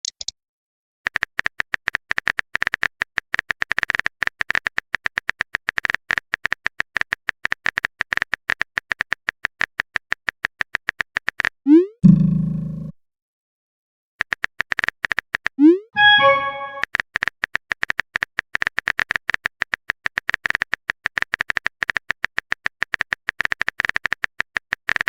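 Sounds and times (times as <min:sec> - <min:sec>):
phone keyboard typing clicks: 0:00.0 - 0:00.3
low notification tone: 0:16.0 - 0:16.8
rising swoosh of message sent: 0:16.0 - 0:16.8.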